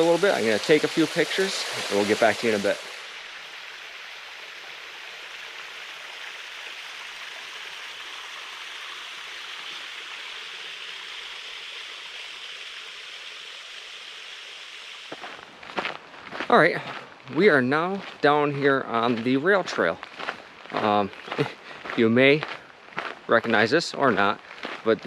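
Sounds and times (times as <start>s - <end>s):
waterfall rushing: 0.0s - 15.4s.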